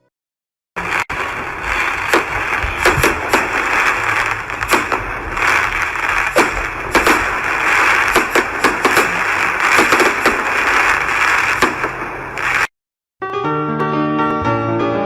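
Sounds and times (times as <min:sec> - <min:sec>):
sharp pops and cracks: 0:00.8 - 0:12.7
steady hiss: 0:00.8 - 0:12.7.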